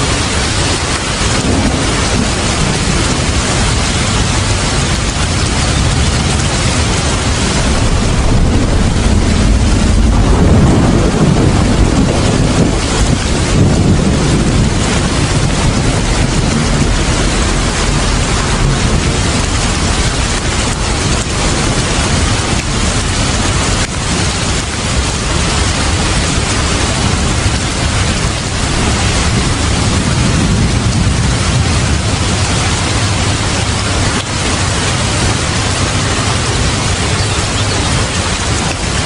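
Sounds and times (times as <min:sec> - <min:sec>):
heavy rain: 0:00.0 - 0:39.0.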